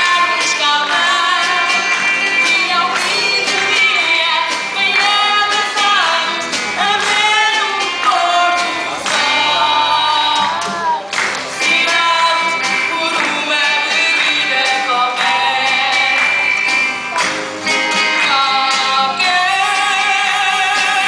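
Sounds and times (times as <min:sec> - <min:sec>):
person singing long notes: 0:00.0 - 0:16.5
plucked guitar: 0:00.0 - 0:21.0.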